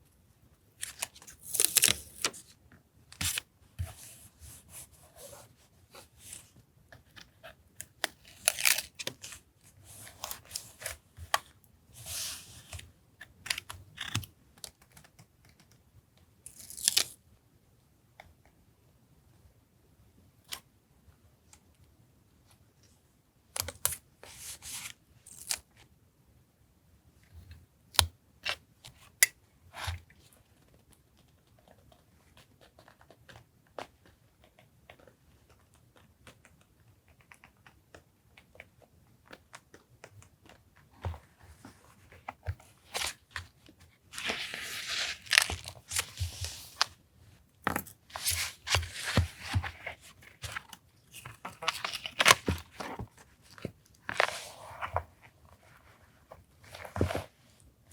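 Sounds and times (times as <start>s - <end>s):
paper rustling and crinkling: 41.0s - 47.0s, 47.7s - 57.6s.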